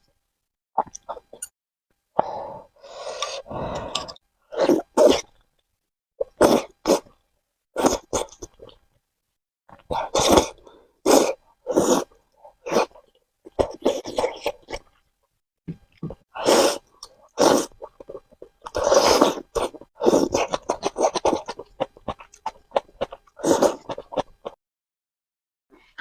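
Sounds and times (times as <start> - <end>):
noodles slurped and chewed: 9.7 - 15.0, 16.0 - 24.6.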